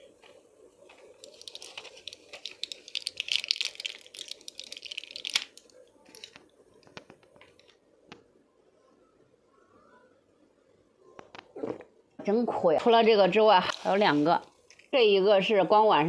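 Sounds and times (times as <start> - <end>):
medicine packaging crinkling: 0.8 - 7.8, 13.7 - 14.9.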